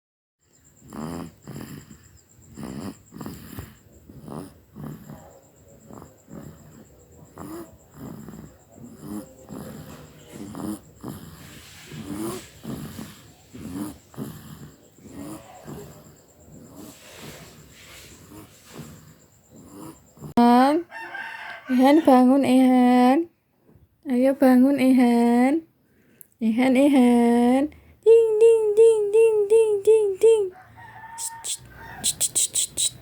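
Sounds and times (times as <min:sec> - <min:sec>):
baby snoring: 0:00.6 - 0:20.4.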